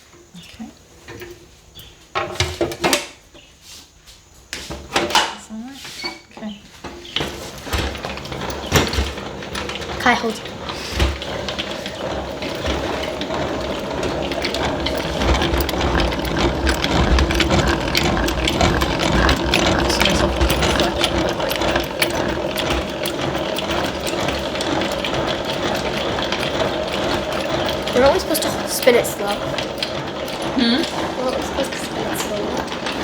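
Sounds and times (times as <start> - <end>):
honey extractor whirring: 0.0 - 33.0
rattle of small clicks: 7.1 - 33.0.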